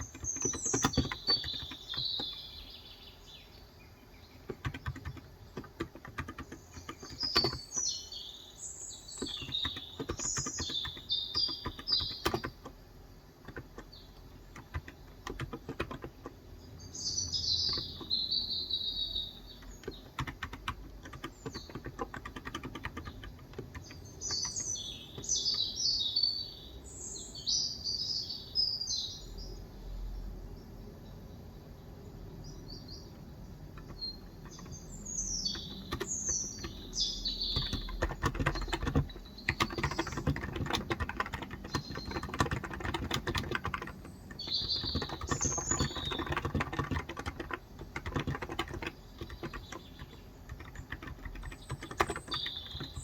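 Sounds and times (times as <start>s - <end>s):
keyboard typing: 0.0s - 2.6s, 4.4s - 8.1s, 9.0s - 16.5s, 17.3s - 18.3s, 19.1s - 25.7s, 33.1s - 53.0s
birds chirping: 0.0s - 53.0s.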